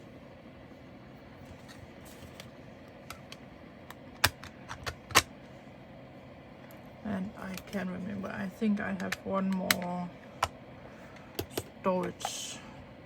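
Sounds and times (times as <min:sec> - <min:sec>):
clicks handling plastic containers: 0:11.2 - 0:12.4.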